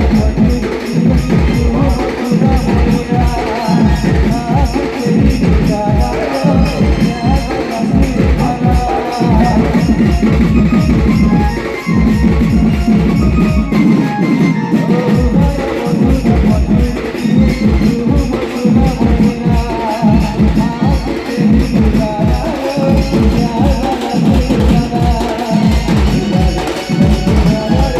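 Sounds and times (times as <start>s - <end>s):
fast dense drumming: 0.0s - 27.9s
wavering melody line: 9.5s - 15.4s.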